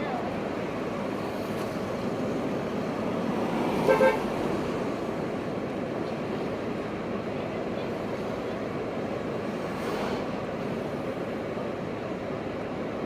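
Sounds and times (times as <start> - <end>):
street traffic noise: 0.0 - 13.0
car horn toot: 3.8 - 4.3.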